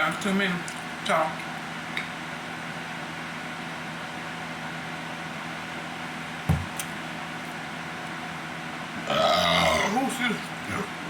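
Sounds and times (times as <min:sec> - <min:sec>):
room hum and hiss: 0:00.0 - 0:11.0.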